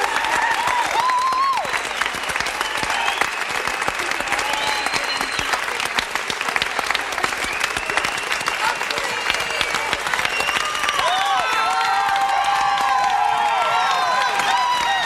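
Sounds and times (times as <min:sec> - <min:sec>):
crowd applauding: 0:00.0 - 0:15.0
crowd cheering: 0:00.0 - 0:15.0.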